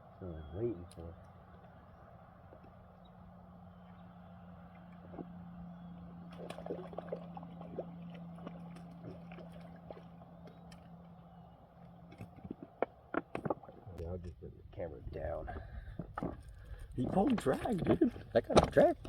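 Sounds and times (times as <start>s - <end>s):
steady low hum: 0.0s - 19.0s
light water splashing: 4.6s - 13.9s.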